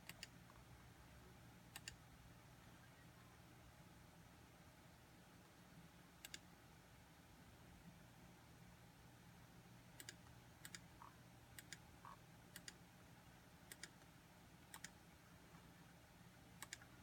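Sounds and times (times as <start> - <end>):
computer mouse clicks: 0.0 - 0.5, 1.7 - 2.0, 6.2 - 6.5, 10.0 - 12.8, 13.7 - 15.0, 16.6 - 17.0
low steady hum: 0.0 - 17.0.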